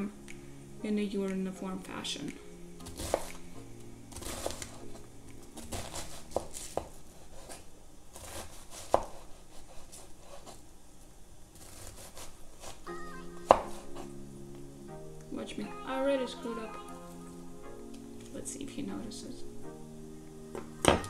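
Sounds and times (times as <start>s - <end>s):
knife chopping on cutting board: 2.8s - 3.4s, 5.6s - 7.6s, 8.2s - 9.3s.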